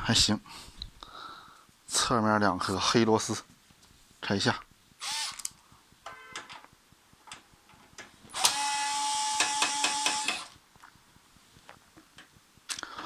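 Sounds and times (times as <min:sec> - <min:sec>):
electric screwdriver whining: 0:05.0 - 0:05.5, 0:08.3 - 0:10.6.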